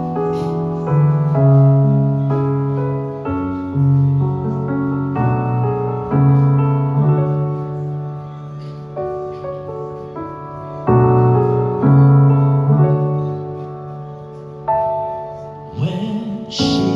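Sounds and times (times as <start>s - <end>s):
piano playing slow chords: 0.0s - 16.9s.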